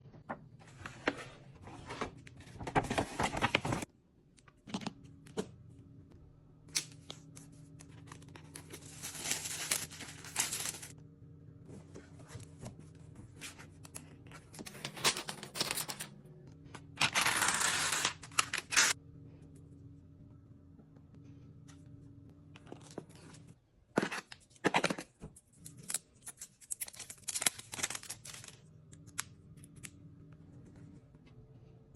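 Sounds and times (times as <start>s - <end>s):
packaging rustling and tearing: 8.5s - 10.9s, 25.8s - 28.6s.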